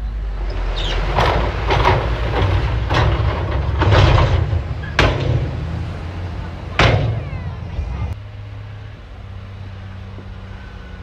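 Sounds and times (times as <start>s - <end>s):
bulldozer engine running: 0.0s - 11.0s
loud clanks and crashes: 0.5s - 8.2s.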